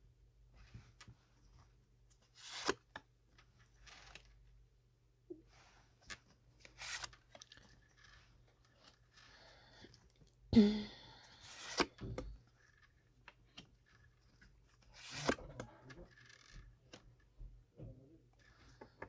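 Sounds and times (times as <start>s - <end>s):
cards shuffling: 2.2s - 4.5s, 5.6s - 9.5s, 11.4s - 17.2s.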